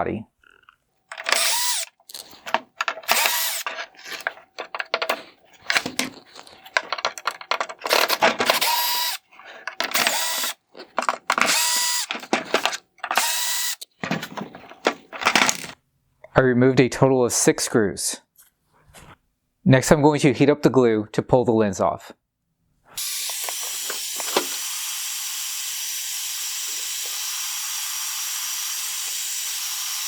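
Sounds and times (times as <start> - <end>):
power drill whining: 1.1 - 15.8, 23.0 - 30.0.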